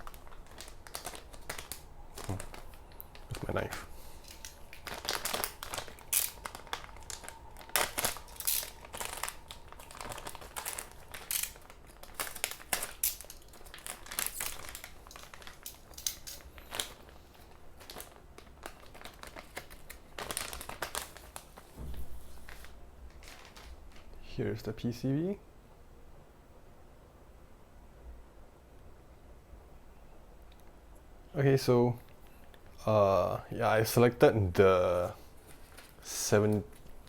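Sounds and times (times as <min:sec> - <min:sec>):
plastic packaging crinkling: 0:00.0 - 0:24.2, 0:34.5 - 0:37.0.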